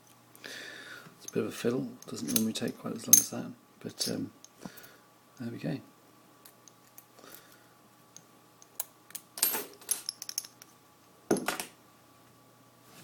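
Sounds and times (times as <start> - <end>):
lock picks jingling: 2.0 - 2.5
metal clicks and clinks: 2.0 - 3.3, 9.8 - 10.7.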